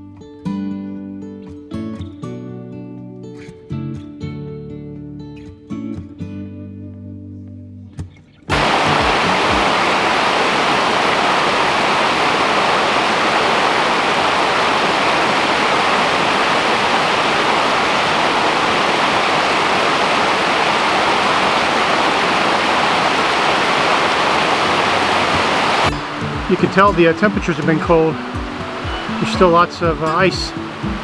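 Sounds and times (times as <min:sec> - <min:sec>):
cascading creek water rushing: 0:08.5 - 0:31.0.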